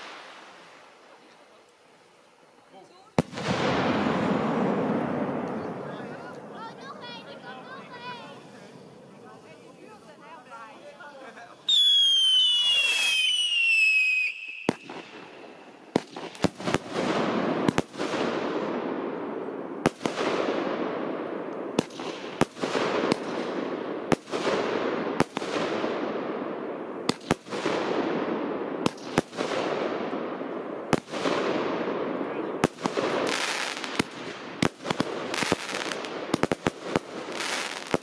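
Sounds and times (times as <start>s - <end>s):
firework bangs: 0.0s - 1.4s, 2.8s - 38.0s
firework whistle: 11.6s - 16.5s.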